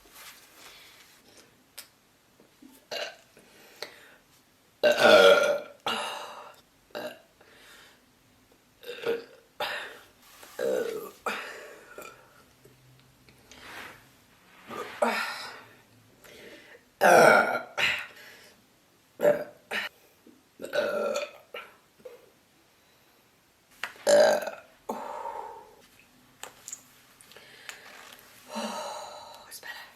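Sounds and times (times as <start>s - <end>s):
woman burping: 2.9s - 3.2s, 4.8s - 7.2s, 8.8s - 9.7s, 10.6s - 12.4s, 17.0s - 18.1s, 19.2s - 19.9s, 20.6s - 21.8s, 24.1s - 25.1s.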